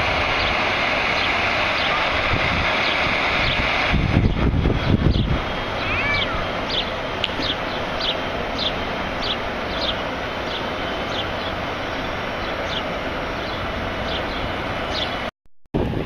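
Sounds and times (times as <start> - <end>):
city traffic hum: 0.0 - 16.0
small bird chirping: 5.1 - 15.2.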